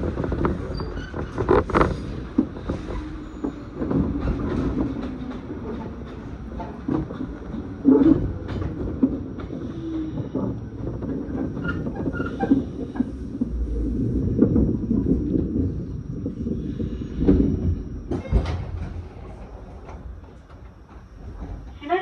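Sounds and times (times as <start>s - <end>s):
train wheels clicking and knocking: 0.0s - 13.5s
train rumbling: 0.0s - 22.0s.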